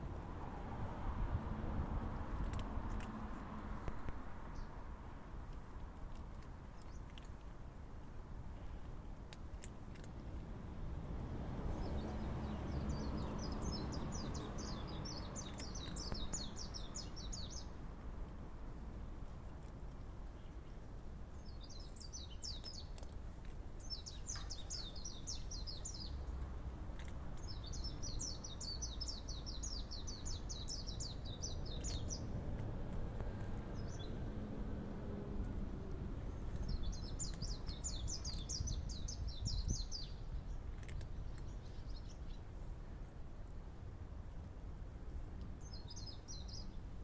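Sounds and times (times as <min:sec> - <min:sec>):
low outdoor rumble: 0:00.0 - 0:47.0.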